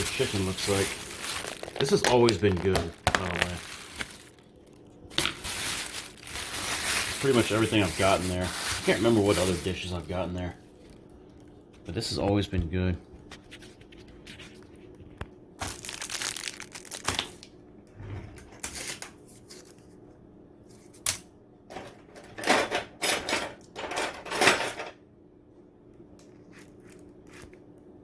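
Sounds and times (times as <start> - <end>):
takeout packaging crinkling: 0.0 - 12.5, 13.3 - 17.5.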